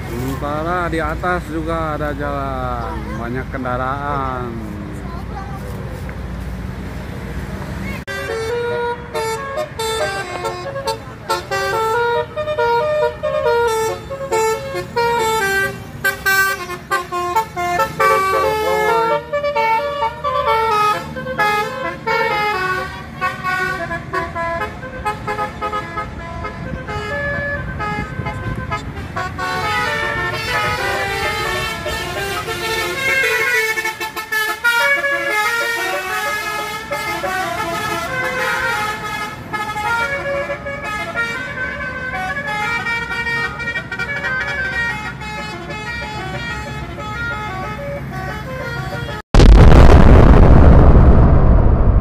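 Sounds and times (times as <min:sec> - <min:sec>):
bus engines rumbling: 0:00.0 - 0:49.2
musical air horns: 0:08.1 - 0:49.5
loud blast of noise: 0:49.3 - 0:52.0.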